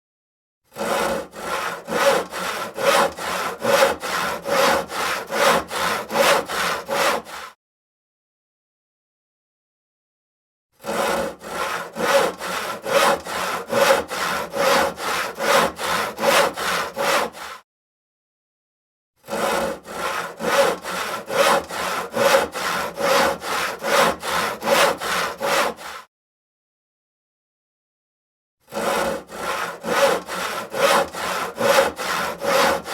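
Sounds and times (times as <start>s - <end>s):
hand saw cutting wood: 0.7s - 7.6s, 10.8s - 17.6s, 19.2s - 26.1s, 28.6s - 32.9s.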